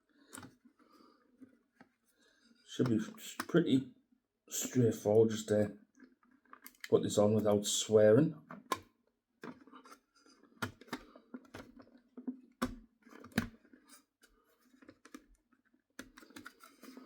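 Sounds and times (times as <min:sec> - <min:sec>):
plastic clicks and light knocks: 0:00.2 - 0:00.6, 0:05.9 - 0:07.6, 0:08.4 - 0:14.0, 0:14.6 - 0:17.0.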